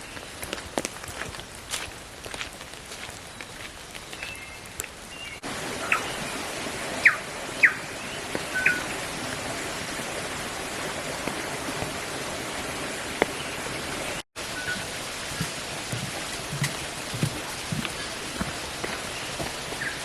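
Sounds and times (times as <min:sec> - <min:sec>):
water hissing: 0:05.4 - 0:20.0
whistled bird calls: 0:07.0 - 0:09.0, 0:14.5 - 0:15.0, 0:19.1 - 0:20.0.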